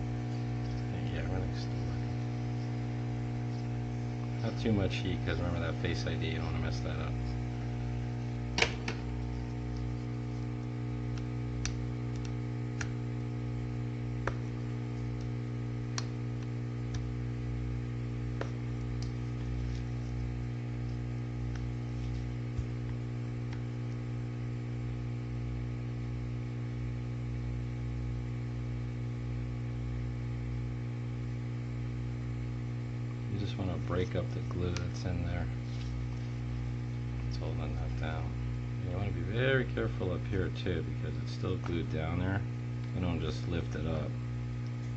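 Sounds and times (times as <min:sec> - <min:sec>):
steady electrical hum: 0:00.0 - 0:44.9.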